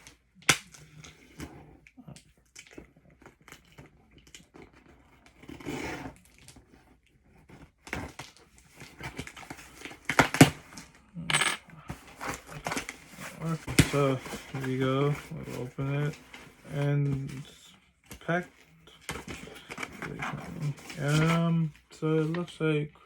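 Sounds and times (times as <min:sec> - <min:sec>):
cardboard box rustling: 0:11.9 - 0:17.4.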